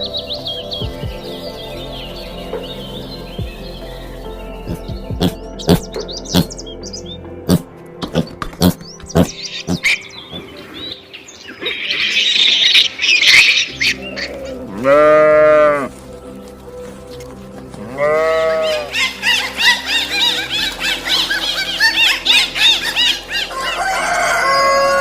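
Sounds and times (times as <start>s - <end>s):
music bed: 0.0s - 11.4s, 13.0s - 25.0s
cow mooing: 14.4s - 15.9s, 17.8s - 18.9s.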